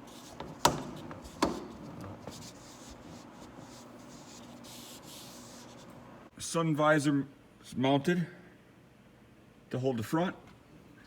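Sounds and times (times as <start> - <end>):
rubbing and handling noise: 0.0 - 6.2.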